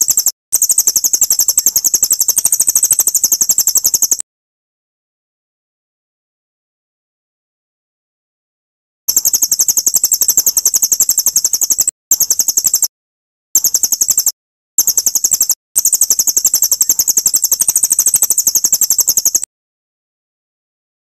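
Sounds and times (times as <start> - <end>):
songbird high-pitched trill: 0.0 - 4.2, 9.1 - 12.9, 13.6 - 19.5.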